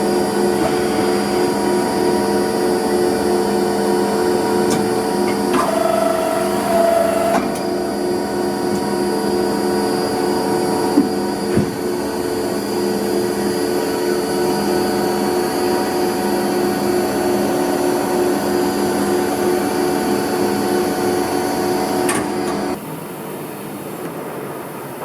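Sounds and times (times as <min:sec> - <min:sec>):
machine tool humming: 0:00.0 - 0:22.8.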